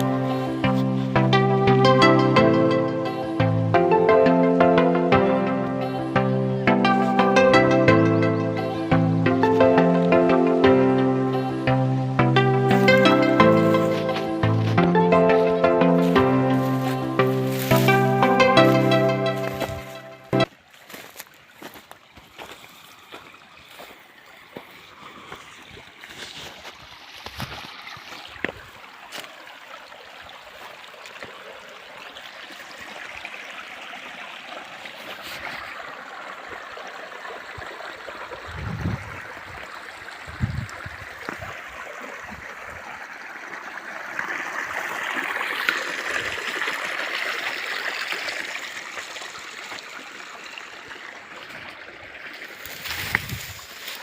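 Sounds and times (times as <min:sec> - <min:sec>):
stream water flowing: 0:00.0 - 0:54.0.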